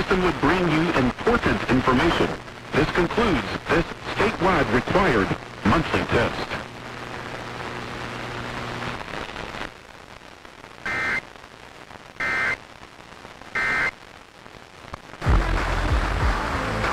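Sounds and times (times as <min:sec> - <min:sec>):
radio hiss: 0:00.0 - 0:16.9
two-tone digital data bursts: 0:10.8 - 0:11.2, 0:12.2 - 0:12.6, 0:13.6 - 0:13.9.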